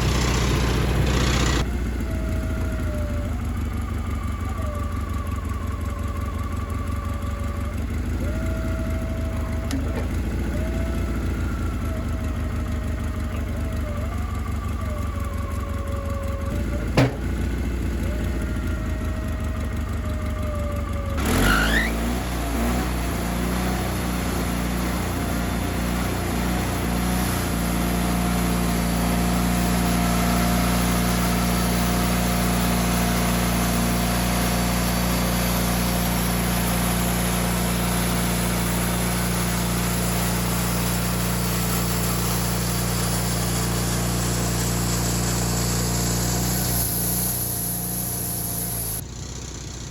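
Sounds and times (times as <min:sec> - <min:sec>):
sawmill engine running: 0:00.0 - 0:49.9
sharp knock: 0:17.0 - 0:17.4.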